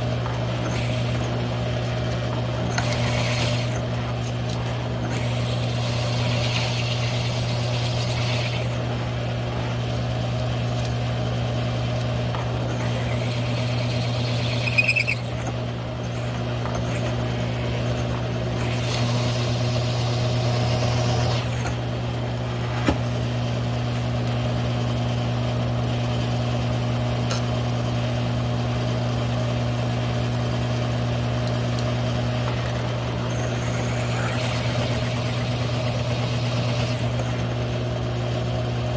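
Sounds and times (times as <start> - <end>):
hole saw grinding steel: 0.0 - 9.0, 12.4 - 21.8, 33.1 - 37.5
drill motor hum: 0.0 - 27.4, 29.6 - 38.9
short squeal: 12.8 - 15.5.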